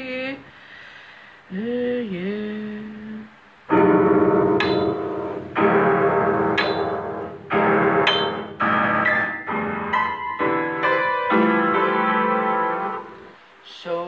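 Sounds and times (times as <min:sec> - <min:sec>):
keyboard playing chords: 0:03.7 - 0:13.4.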